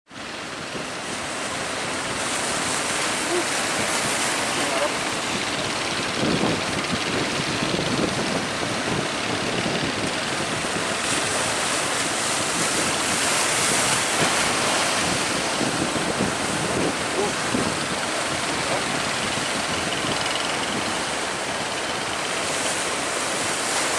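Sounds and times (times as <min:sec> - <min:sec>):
big waves rushing: 0:00.1 - 0:23.9
wind buffeting microphone: 0:00.5 - 0:23.6.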